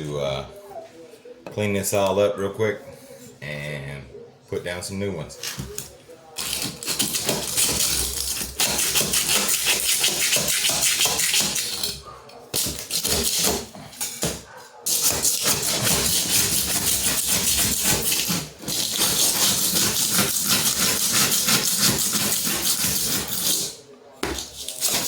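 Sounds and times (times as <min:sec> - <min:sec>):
mortar scraped off floor: 0:14.9 - 0:25.0.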